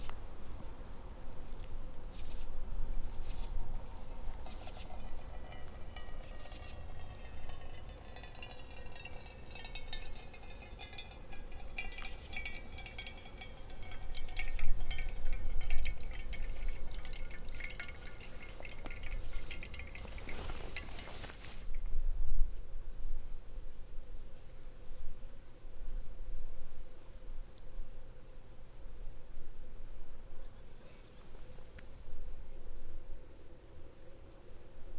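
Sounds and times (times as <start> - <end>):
liquid trickling: 3.0 - 21.7
small splashes: 3.5 - 21.6.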